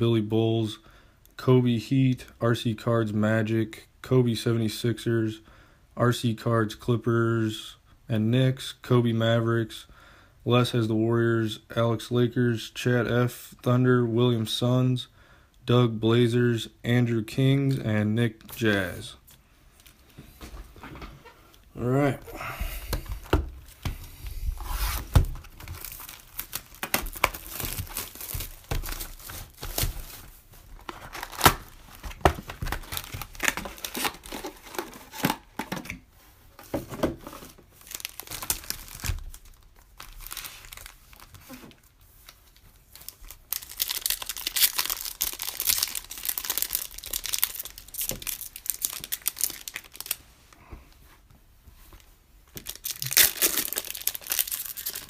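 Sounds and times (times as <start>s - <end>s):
plastic wrapping and cardboard tearing: 24.6s - 35.5s, 37.8s - 41.8s, 42.9s - 50.2s, 52.6s - 55.0s.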